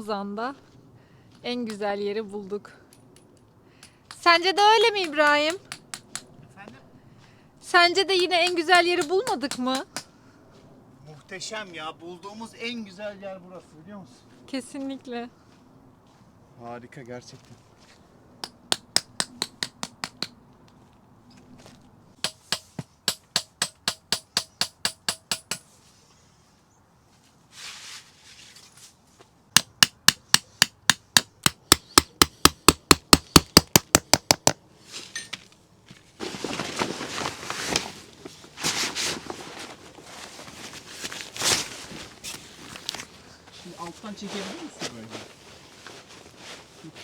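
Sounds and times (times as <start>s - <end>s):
rough rustling: 34.7s - 47.0s.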